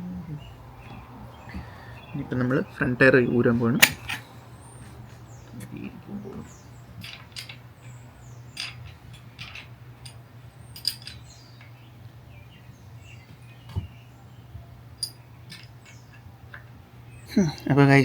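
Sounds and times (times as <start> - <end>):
faint bird chirps: 0.0 - 9.5
steady low hum: 0.0 - 18.0.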